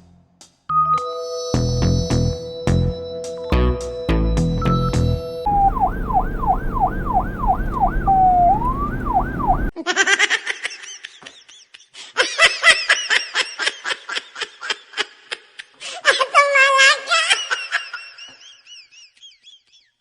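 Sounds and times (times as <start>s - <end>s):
music: 0.0s - 5.5s
electronic police siren yelp: 4.6s - 9.7s
low rumble: 4.6s - 9.7s
high-pitched laughter: 9.8s - 19.9s.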